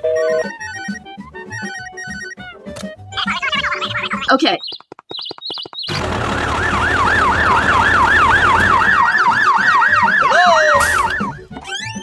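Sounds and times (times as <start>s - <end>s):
emergency siren yelping: 5.8s - 12.0s.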